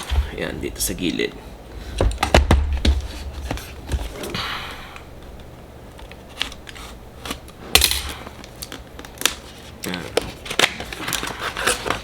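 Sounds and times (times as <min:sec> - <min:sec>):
cardboard tearing rustle: 0:08.5 - 0:12.0.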